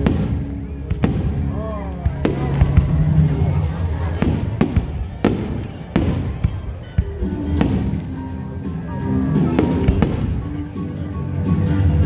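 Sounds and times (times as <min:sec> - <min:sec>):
firework bangs: 0:00.0 - 0:01.6, 0:02.2 - 0:03.1, 0:04.0 - 0:10.8
rumble of firework bursts: 0:00.0 - 0:11.1
music playing: 0:00.0 - 0:12.0.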